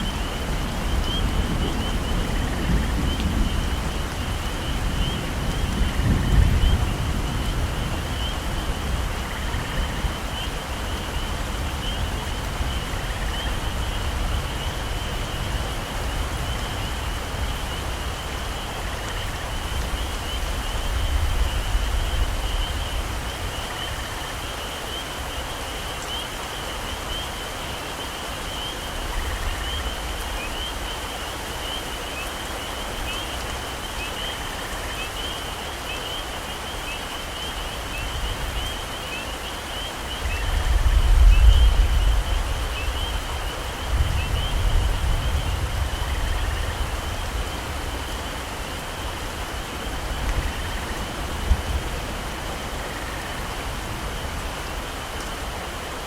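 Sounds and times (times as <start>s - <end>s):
low rumble of thunder: 0.0s - 17.9s, 40.2s - 48.2s, 48.8s - 54.5s
heavy rain on foliage: 0.0s - 56.0s
insects chirring: 0.0s - 56.0s.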